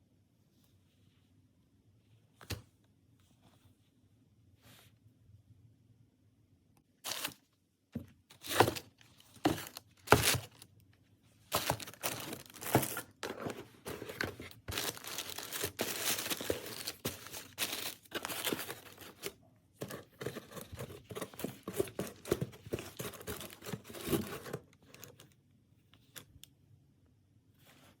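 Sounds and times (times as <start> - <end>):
wrapping rustling and crinkling: 7.0 - 7.5, 8.3 - 10.8, 11.4 - 25.2
packaging tearing: 7.1 - 7.4, 11.5 - 19.3.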